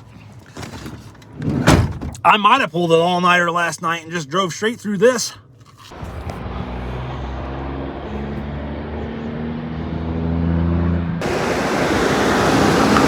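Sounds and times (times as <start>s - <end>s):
van engine and road drone: 5.9s - 13.0s
loud rushing noise: 11.2s - 13.0s.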